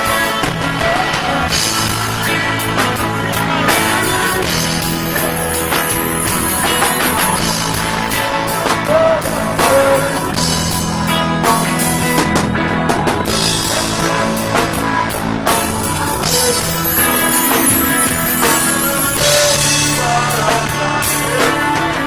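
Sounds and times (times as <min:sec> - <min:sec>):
guitar playing: 0:00.0 - 0:09.6, 0:11.1 - 0:21.1
drum kit beat: 0:00.0 - 0:12.4, 0:13.1 - 0:22.0
loud dancehall music: 0:00.9 - 0:08.4, 0:13.6 - 0:20.6.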